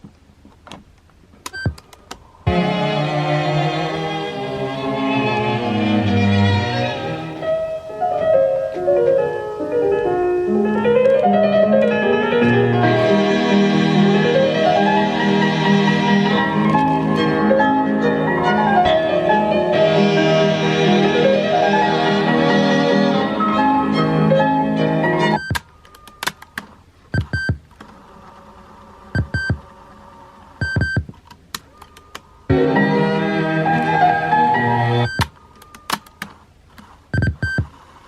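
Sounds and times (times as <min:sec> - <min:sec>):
classical piano and strings music: 0:02.5 - 0:25.4, 0:32.5 - 0:35.1.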